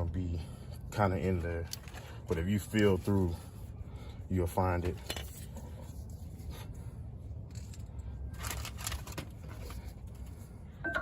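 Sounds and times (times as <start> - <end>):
low steady hum: 0.0 - 11.0
brake parts scraping and clicking: 1.3 - 3.3, 7.4 - 11.0.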